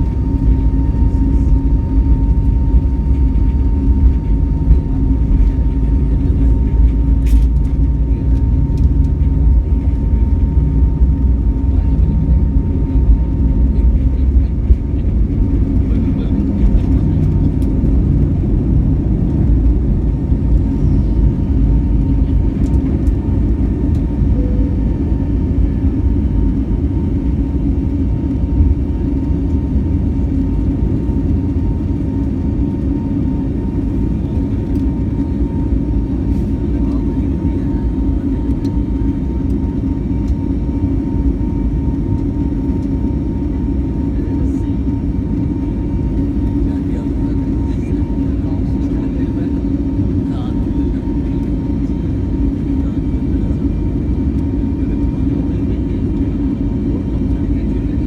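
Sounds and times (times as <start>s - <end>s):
jet engine rumble: 0.0s - 58.0s
thin steady whine: 24.0s - 27.7s.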